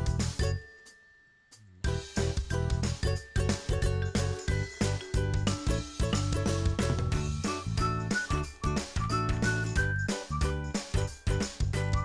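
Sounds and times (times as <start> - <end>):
light bouncy plucked music: 0.0 - 12.0.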